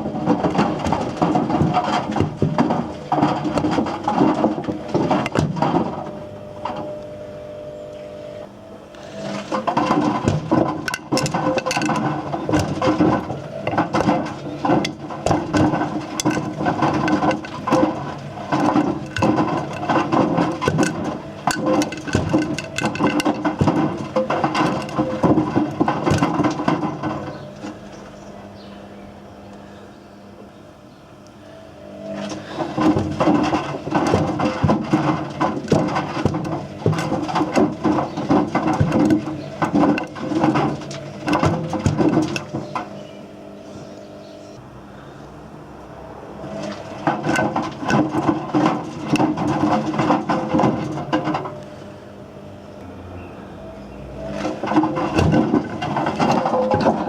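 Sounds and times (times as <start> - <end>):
hard objects clattering in drum: 0.0 - 6.1, 9.2 - 27.5, 32.2 - 42.9, 46.6 - 51.5, 54.3 - 57.0
washing machine drum tumbling: 0.0 - 7.0, 9.2 - 27.6, 32.1 - 43.0, 46.5 - 51.6, 54.2 - 57.0
motor hum: 0.0 - 57.0
washing machine drum turning: 32.6 - 42.9.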